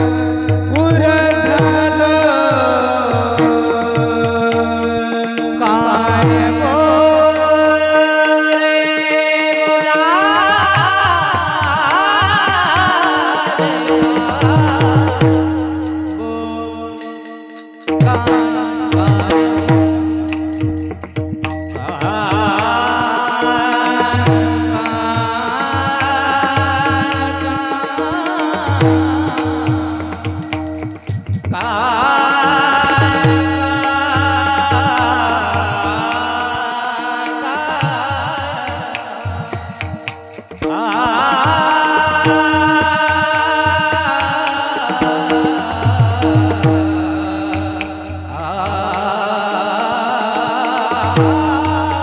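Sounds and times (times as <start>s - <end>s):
person singing ornamented melody: 0.0s - 52.0s
hand drum beats: 13.9s - 16.2s, 17.9s - 36.4s, 38.6s - 48.8s, 51.0s - 52.0s.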